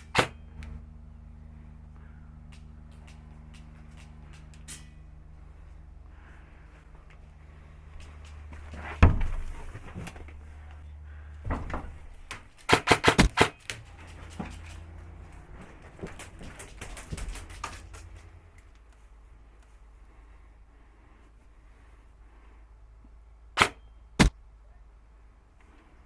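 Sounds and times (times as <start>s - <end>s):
airsoft rifle shots: 0.0s - 0.5s, 12.6s - 13.8s, 23.6s - 24.4s.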